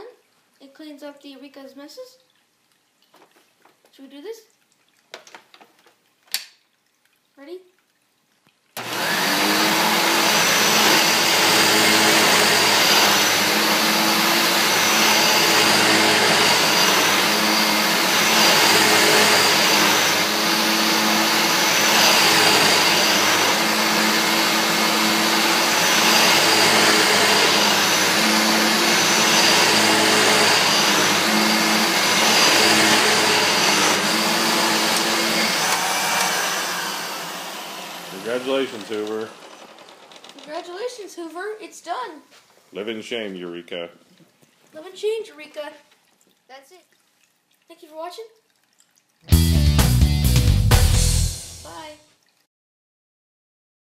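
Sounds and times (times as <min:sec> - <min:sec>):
vacuum cleaner running: 0:08.8 - 0:40.7.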